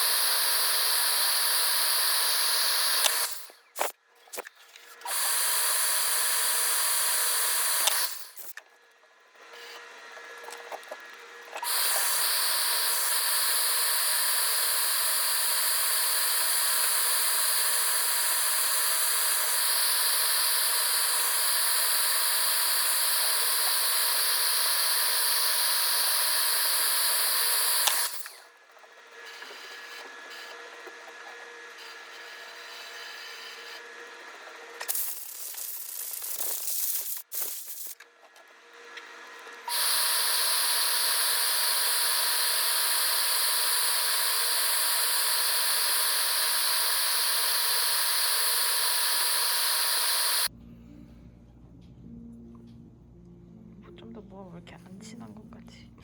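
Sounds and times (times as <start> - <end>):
machine hissing and whining: 0.0 - 3.9, 5.1 - 8.6, 11.5 - 28.4, 39.6 - 50.5.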